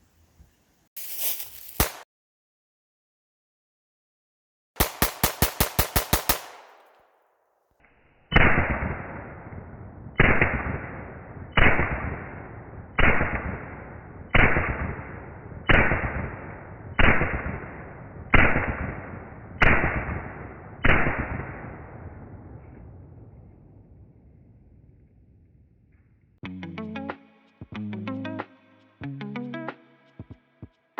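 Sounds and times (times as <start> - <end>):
pistol shots echoing: 4.8 - 7.1, 8.3 - 22.3.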